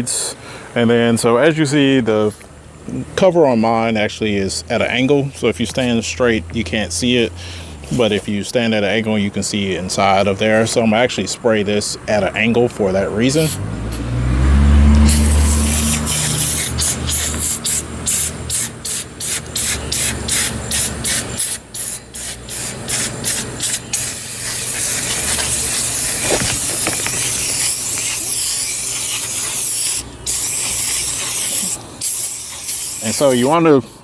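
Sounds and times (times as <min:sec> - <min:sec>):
aerosol can spraying: 0:14.9 - 0:33.5.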